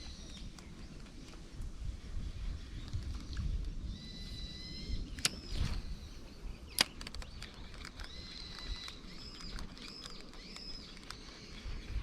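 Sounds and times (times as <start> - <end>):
bird whistled calls: 3.9 - 6.9
sharp clicks: 5.1 - 5.7, 6.7 - 11.6.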